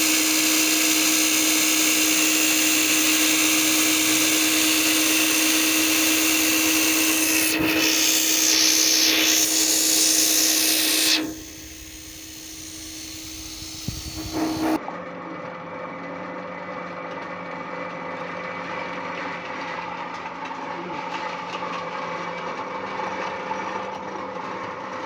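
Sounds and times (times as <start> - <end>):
electric power tool running: 0.0 - 14.8.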